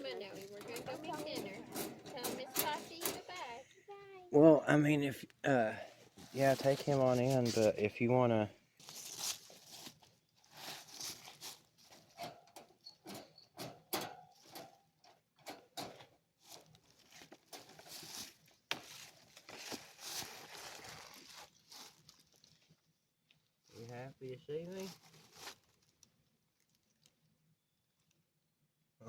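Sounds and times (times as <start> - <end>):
rustling and scuffing: 6.0 - 7.9, 8.8 - 12.5, 16.4 - 22.7, 24.6 - 25.8
small clicks and crackles: 16.4 - 28.3.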